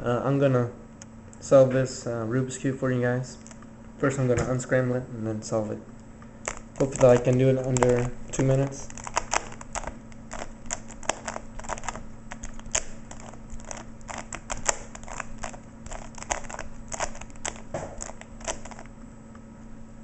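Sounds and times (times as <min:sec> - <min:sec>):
puzzle cube turning clicks: 0:06.4 - 0:18.9.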